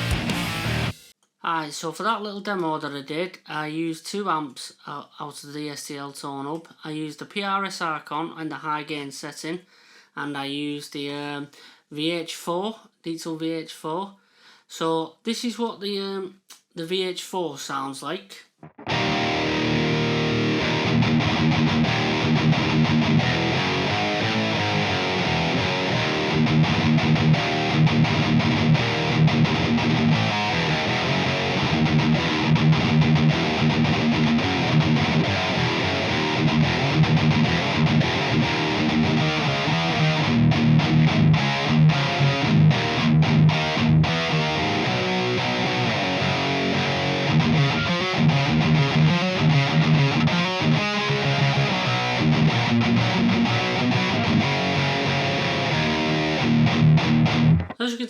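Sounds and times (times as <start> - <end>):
distorted electric guitar riffing: 0.0 - 1.1, 18.6 - 57.8.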